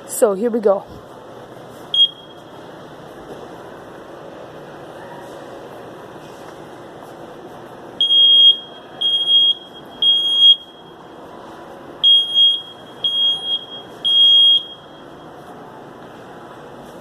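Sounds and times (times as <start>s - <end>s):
smoke alarm beeps: 1.9s - 2.6s, 8.0s - 11.1s, 12.0s - 15.4s.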